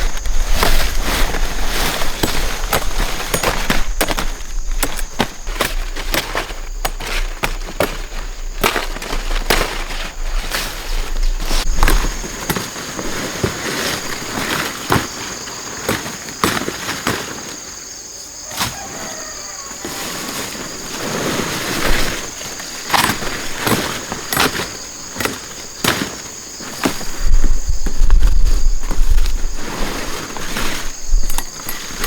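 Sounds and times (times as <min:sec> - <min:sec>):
sharp snaps and rustles: 0:00.0 - 0:17.8, 0:20.2 - 0:32.0.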